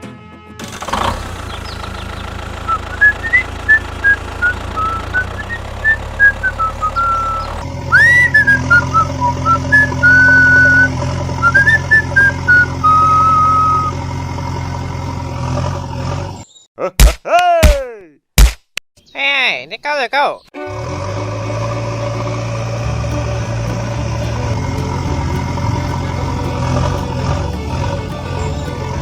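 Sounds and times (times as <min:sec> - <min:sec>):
engine hum: 0:00.6 - 0:16.6, 0:20.6 - 0:29.0
whistled tune: 0:02.7 - 0:14.0.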